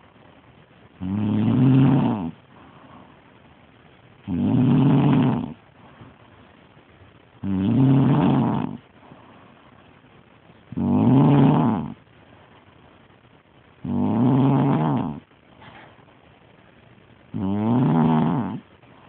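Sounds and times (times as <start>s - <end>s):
woman snoring: 1.0s - 2.4s, 4.3s - 5.6s, 7.4s - 8.8s, 10.7s - 12.0s, 13.8s - 15.2s, 17.4s - 18.6s.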